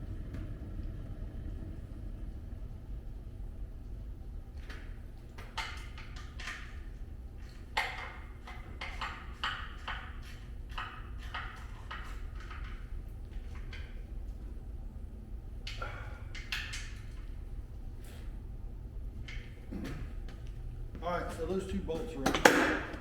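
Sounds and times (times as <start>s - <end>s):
low hum: 0.0s - 5.4s.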